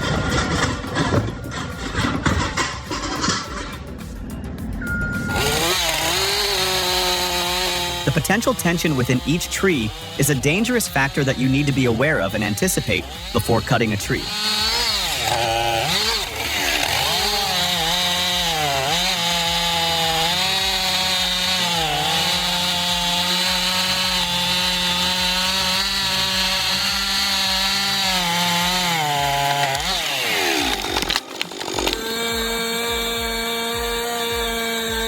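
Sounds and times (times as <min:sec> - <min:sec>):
chainsaw cutting wood: 0:00.0 - 0:04.3, 0:05.2 - 0:35.0
machine humming steadily: 0:00.0 - 0:35.0.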